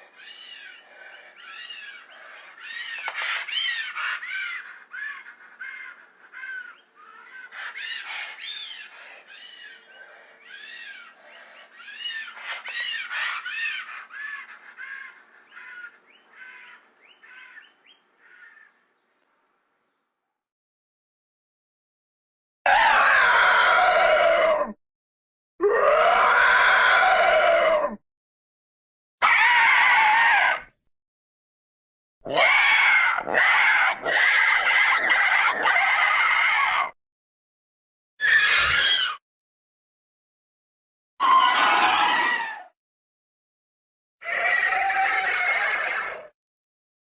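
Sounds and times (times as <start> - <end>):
creature screeching cries: 22.7 - 24.8, 25.6 - 28.0, 29.2 - 30.7, 32.3 - 37.0, 38.2 - 39.2, 41.2 - 42.8, 44.2 - 46.4.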